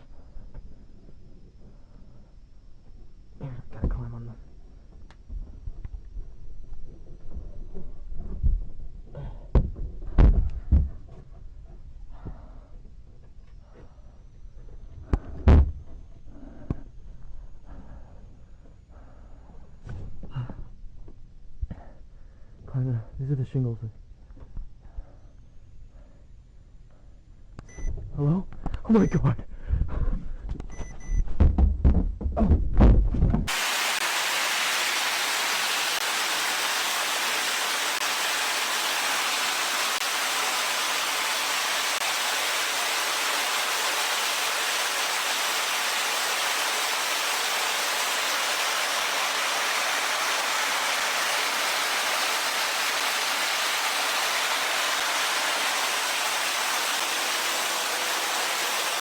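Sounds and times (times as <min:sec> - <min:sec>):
steady static hiss: 0:33.5 - 0:59.0.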